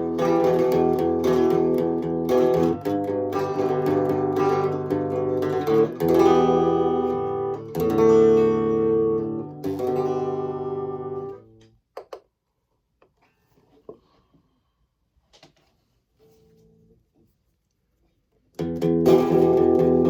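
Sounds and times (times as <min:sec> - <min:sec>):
electric guitar strummed chords: 0:00.0 - 0:11.6, 0:18.6 - 0:20.0.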